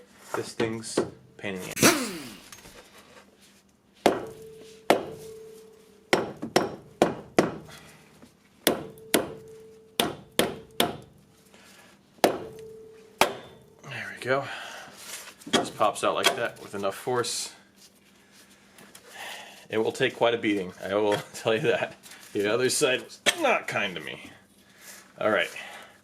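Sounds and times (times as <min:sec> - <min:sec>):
hammer striking metal axle: 0:04.1 - 0:05.4, 0:08.7 - 0:11.1, 0:12.2 - 0:13.7.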